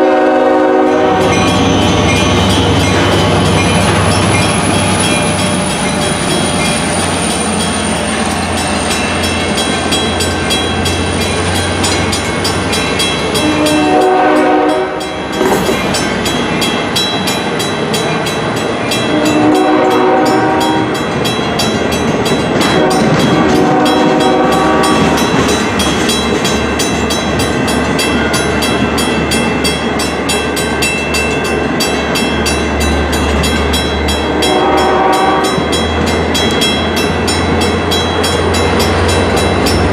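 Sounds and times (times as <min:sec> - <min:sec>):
train air horn blasts: 0:00.0 - 0:01.6, 0:13.4 - 0:15.6, 0:19.1 - 0:21.0, 0:22.6 - 0:25.2, 0:34.3 - 0:35.8
train passing loudly: 0:00.0 - 0:39.9.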